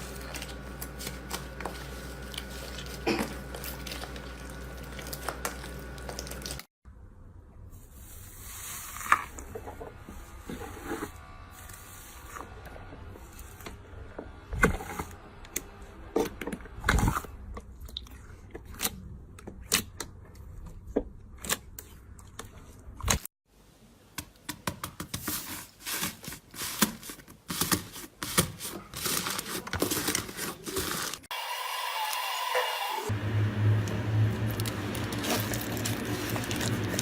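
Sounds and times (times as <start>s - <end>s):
slime squeezed crackling: 34.5s - 37.0s.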